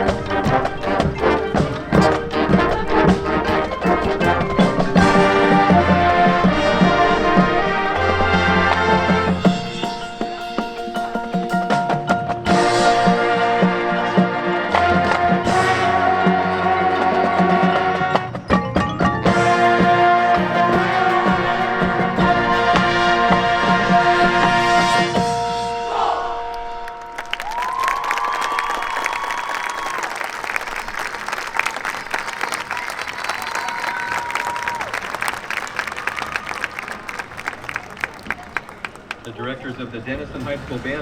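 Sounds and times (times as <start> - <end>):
marching band playing: 0.0 - 41.0
applause: 26.8 - 39.3.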